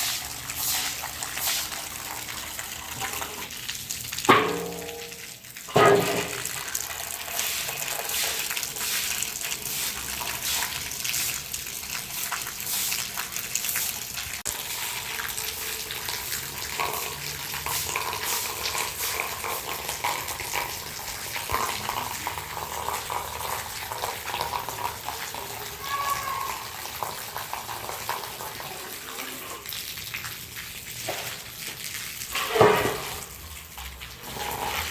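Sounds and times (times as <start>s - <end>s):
running water splashing: 0.0s - 34.9s.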